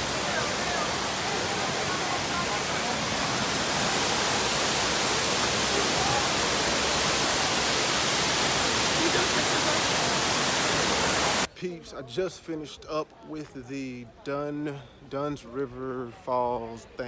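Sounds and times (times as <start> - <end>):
waterfall roaring: 0.0 - 11.5.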